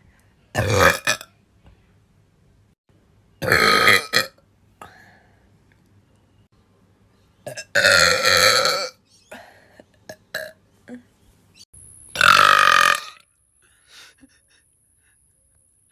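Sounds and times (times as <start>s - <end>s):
loud drawn-out burps: 0.5s - 1.3s, 3.4s - 4.4s, 7.4s - 9.0s, 10.1s - 10.6s, 12.2s - 13.2s.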